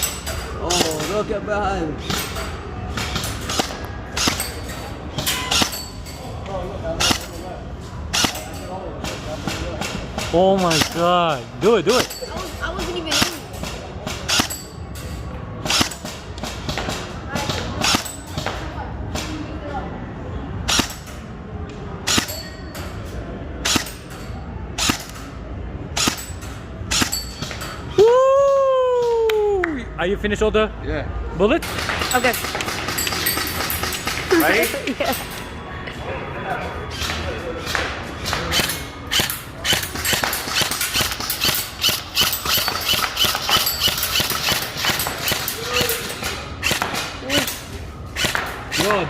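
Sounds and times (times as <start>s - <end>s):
airsoft gun shots: 38.5s - 47.6s, 48.2s - 49.0s.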